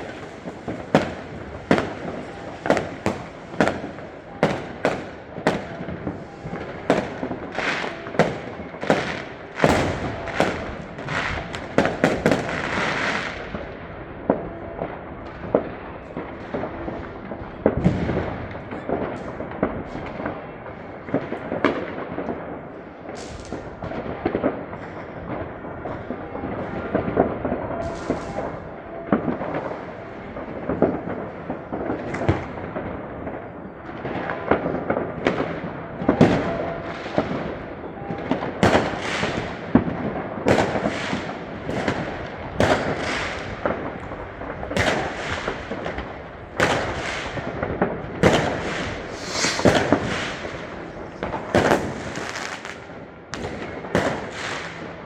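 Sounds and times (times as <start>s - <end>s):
fireworks crackling hiss: 0.0s - 8.0s, 27.9s - 28.5s, 40.6s - 52.9s
fireworks bangs: 0.0s - 55.0s
low rumbling echoes: 41.6s - 55.0s.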